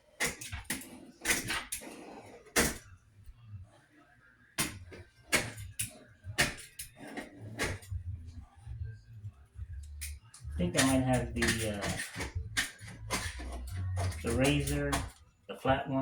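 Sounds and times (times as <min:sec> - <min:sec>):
knocks and clicks of hand work: 0:09.6 - 0:15.2.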